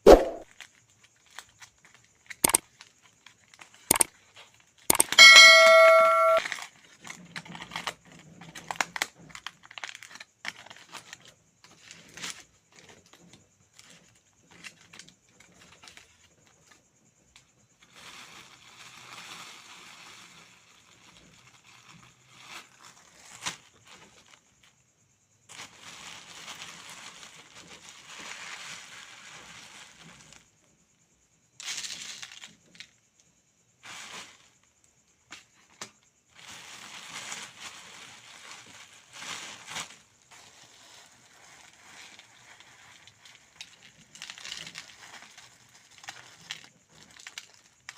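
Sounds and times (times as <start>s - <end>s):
short clicks and crackles: 2.4s - 2.6s, 4.9s - 6.4s.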